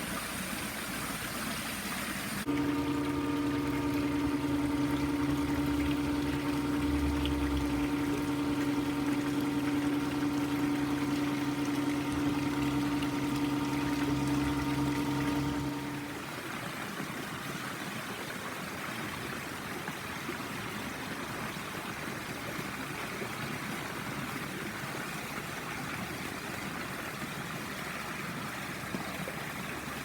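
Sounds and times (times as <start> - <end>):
water flowing and pouring: 0.0 - 16.4
pool pump humming: 0.0 - 30.0.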